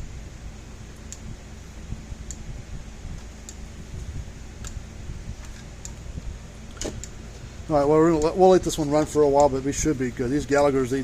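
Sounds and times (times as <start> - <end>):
low steady hum: 0.0 - 11.0
electric fence charger ticking: 0.8 - 1.4, 2.2 - 2.5, 3.1 - 3.7, 4.5 - 6.1, 7.8 - 9.6.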